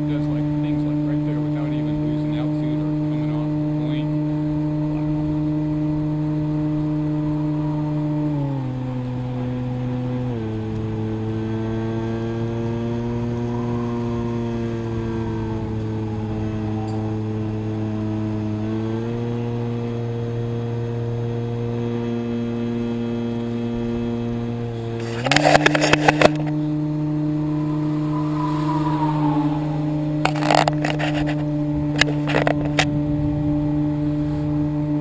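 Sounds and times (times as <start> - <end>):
electric motor and propeller humming: 0.0 - 35.0.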